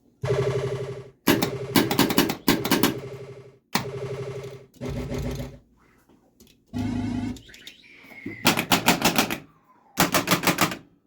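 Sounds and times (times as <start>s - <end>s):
rapid machine-gun-like pulses: 0.2s - 5.6s
short electronic tones: 6.8s - 8.5s.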